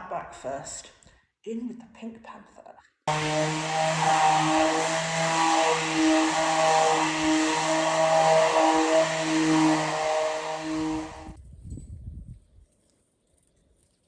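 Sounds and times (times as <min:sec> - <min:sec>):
electric sander running: 0:03.1 - 0:11.4.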